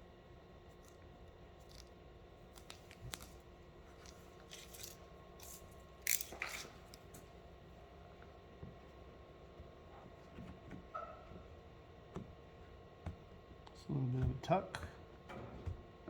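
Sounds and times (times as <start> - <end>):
plastic film rustling and clicking: 1.6 - 7.2.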